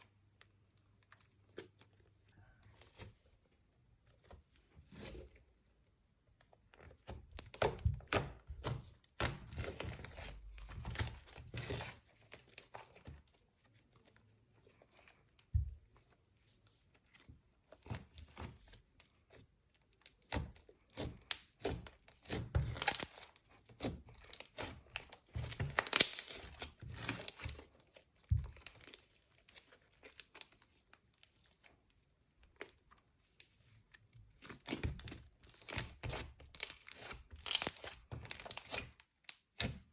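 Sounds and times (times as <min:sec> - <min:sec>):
slime crackling and popping: 0:21.0 - 0:29.0, 0:34.6 - 0:39.8.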